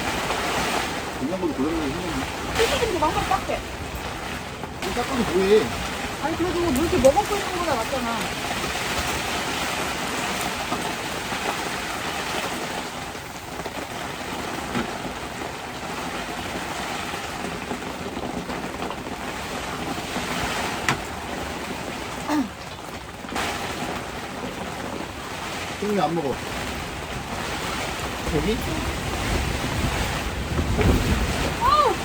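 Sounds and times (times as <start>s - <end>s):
heavy rain pouring: 0.0s - 32.0s.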